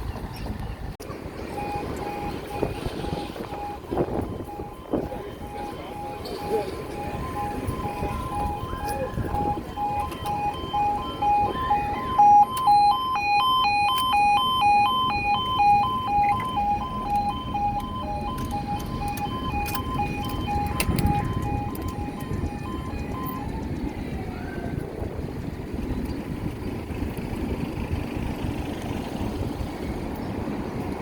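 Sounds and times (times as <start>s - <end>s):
second alarm: 1.5s - 23.8s
warbling two-tone alarm: 1.5s - 23.8s.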